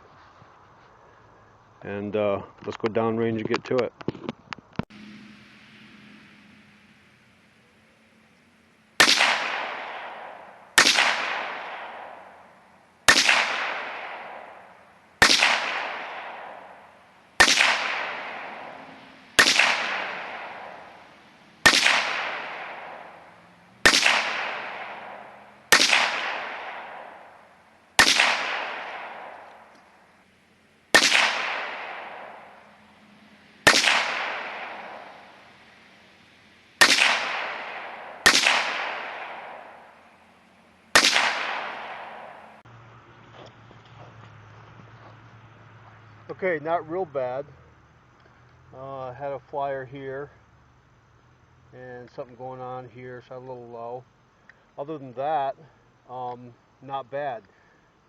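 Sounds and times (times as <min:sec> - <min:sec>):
pistol shots with echo: 0:09.0 - 0:29.8, 0:30.9 - 0:35.9, 0:36.8 - 0:40.1, 0:40.9 - 0:42.6.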